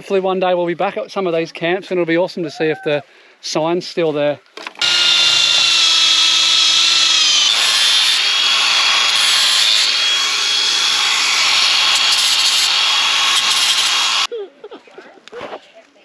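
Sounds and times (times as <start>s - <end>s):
power tool cutting timber: 4.8s - 14.3s.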